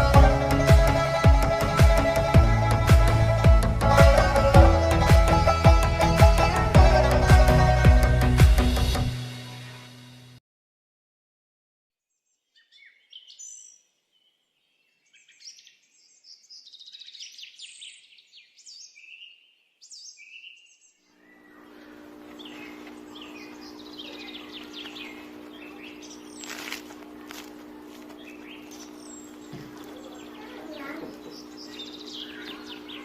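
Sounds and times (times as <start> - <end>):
songbirds chirping and singing: 12.4 - 33.0
steady low hum: 21.2 - 33.0.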